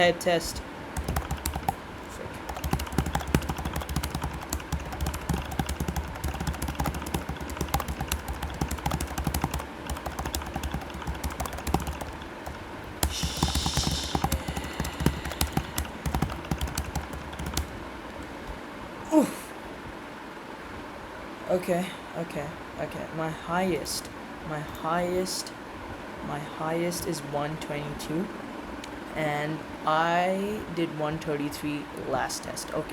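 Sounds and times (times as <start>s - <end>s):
fast typing on keyboard: 1.0s - 1.8s, 2.4s - 17.8s.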